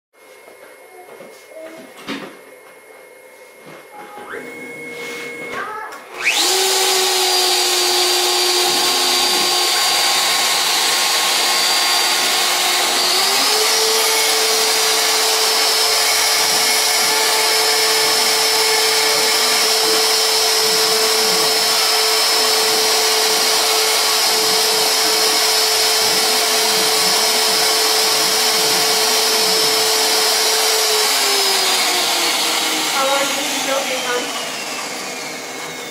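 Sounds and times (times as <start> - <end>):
router motor whining: 3.9 - 35.9.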